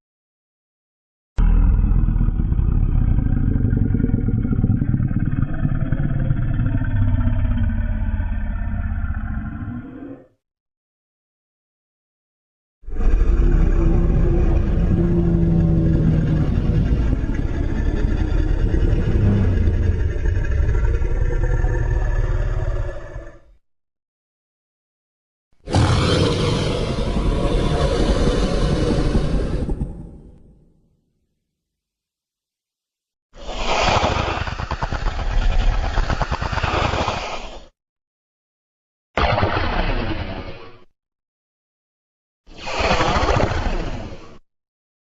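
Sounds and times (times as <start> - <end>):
deep creature roar: 1.4 - 10.4, 12.9 - 23.6, 25.6 - 30.7.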